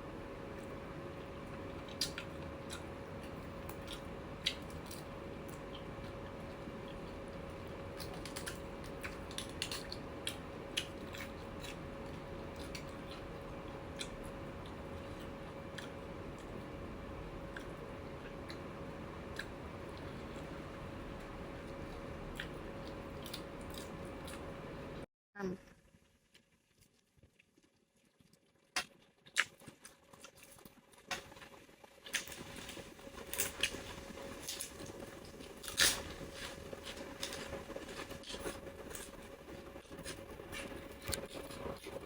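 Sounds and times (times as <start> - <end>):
steady low hum: 0.0 - 25.7, 32.1 - 42.0
person chewing food: 0.5 - 16.8, 17.4 - 24.5, 26.3 - 42.0
small clicks and crunches: 32.1 - 42.0.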